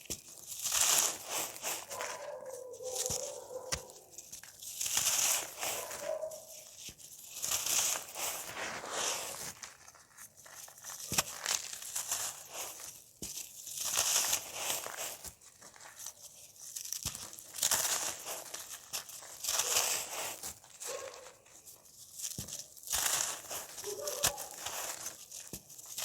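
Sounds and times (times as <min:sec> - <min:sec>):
pieces snapping: 0:00.0 - 0:06.5, 0:22.3 - 0:26.0
dry cake crumbling and crunching: 0:00.0 - 0:26.0.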